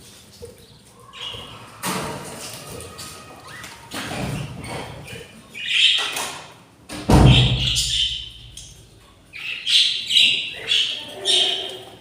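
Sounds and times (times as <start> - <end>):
budgies chirping and squawking: 0.4 - 6.4, 7.1 - 12.0
loud thump: 7.1 - 8.0.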